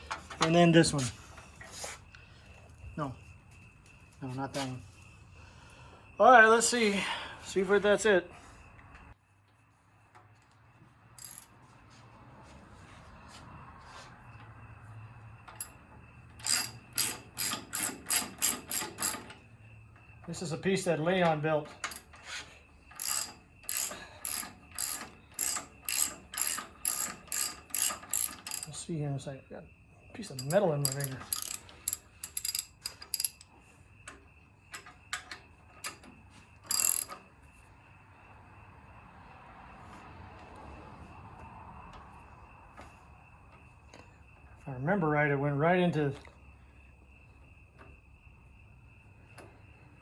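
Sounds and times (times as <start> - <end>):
metal tools clinking: 0.0 - 1.9, 20.4 - 28.8, 30.2 - 33.5
ratchet wrench clicking: 11.2 - 11.5, 15.6 - 19.4, 22.9 - 28.8, 30.4 - 33.5, 36.7 - 37.2
ringing metallic clatter: 30.3 - 33.4.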